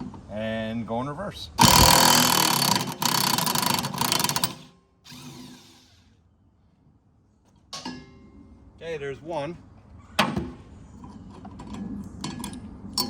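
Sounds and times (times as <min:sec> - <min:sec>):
impact wrench running: 0:01.6 - 0:05.9.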